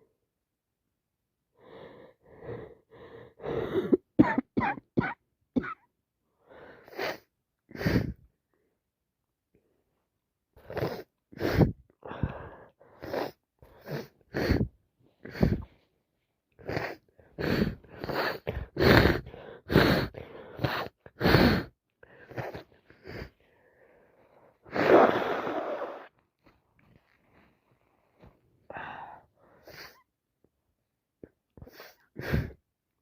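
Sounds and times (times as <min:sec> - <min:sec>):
long breathy sound: 0:28.7 - 0:30.0.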